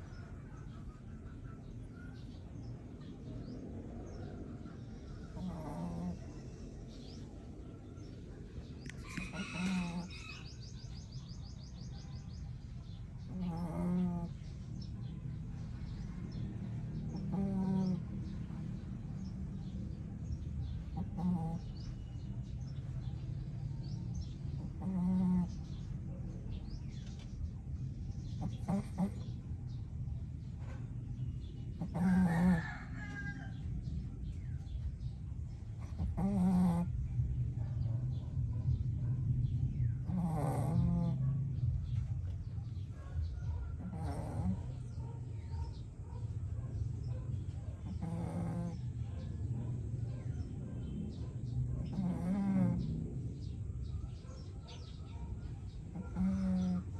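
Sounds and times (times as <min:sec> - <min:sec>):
pet snoring: 0:05.3 - 0:07.3, 0:09.2 - 0:10.5, 0:13.2 - 0:14.6, 0:15.9 - 0:18.6, 0:20.9 - 0:22.0, 0:24.2 - 0:25.8, 0:28.4 - 0:29.4, 0:31.7 - 0:33.4, 0:35.8 - 0:37.1, 0:40.0 - 0:41.4, 0:43.8 - 0:45.0, 0:47.8 - 0:49.0, 0:51.8 - 0:53.0, 0:55.9 - 0:56.9.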